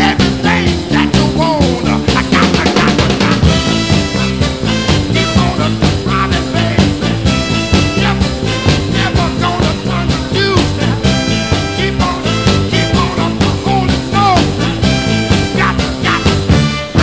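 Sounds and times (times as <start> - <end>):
soul band with horn section: 0.0 - 17.0.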